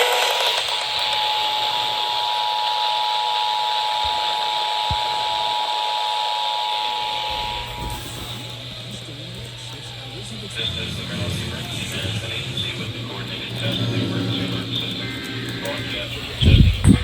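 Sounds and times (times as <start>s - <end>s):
two-tone alarm: 0.0s - 8.9s
radio reception hiss: 0.0s - 17.0s.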